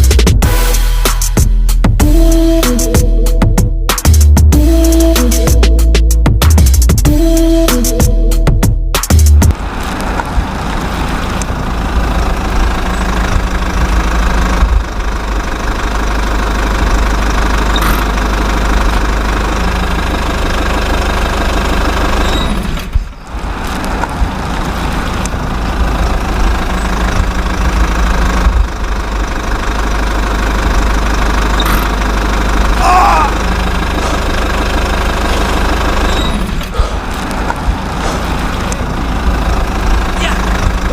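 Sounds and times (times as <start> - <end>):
toy vehicle engine knocking idle: 11.9 - 22.2, 25.8 - 36.9, 38.8 - 40.9.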